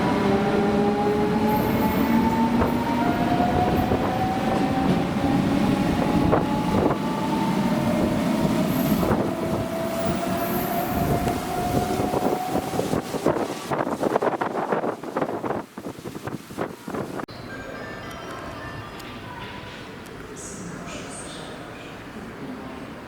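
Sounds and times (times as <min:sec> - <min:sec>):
train rumble: 0:00.0 - 0:17.3.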